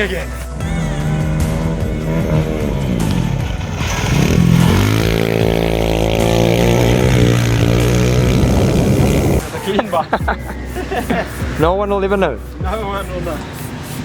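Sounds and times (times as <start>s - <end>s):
dirt bike engine revving: 0.5s - 9.6s.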